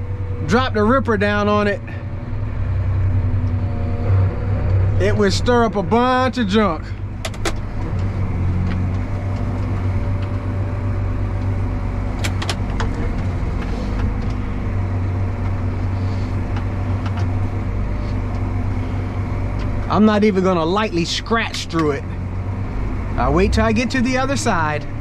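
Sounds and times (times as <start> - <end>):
tractor engine running: 0.0 - 25.0
sharp clicks: 7.2 - 7.7.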